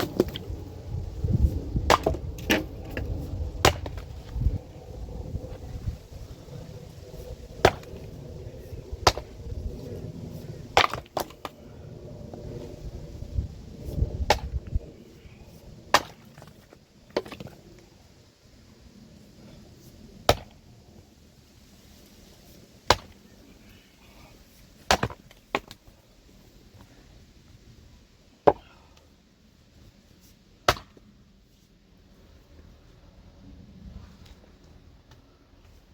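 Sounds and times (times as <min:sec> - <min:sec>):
axe splitting firewood: 0:00.0 - 0:00.4, 0:01.8 - 0:04.1, 0:07.6 - 0:08.1, 0:09.0 - 0:09.4, 0:10.8 - 0:11.6, 0:14.2 - 0:14.6, 0:15.9 - 0:17.6, 0:20.2 - 0:20.5, 0:22.8 - 0:23.2, 0:24.8 - 0:25.8, 0:28.4 - 0:28.7, 0:30.6 - 0:31.0
low rumble: 0:00.0 - 0:16.0.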